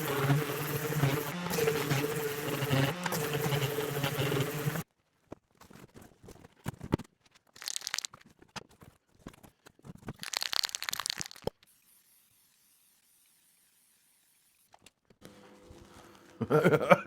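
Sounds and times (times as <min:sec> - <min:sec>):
machine hum: 0:00.0 - 0:04.8.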